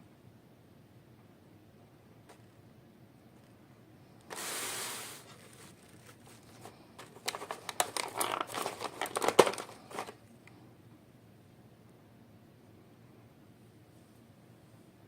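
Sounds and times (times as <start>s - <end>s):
plastic packaging crinkling: 4.3s - 10.2s.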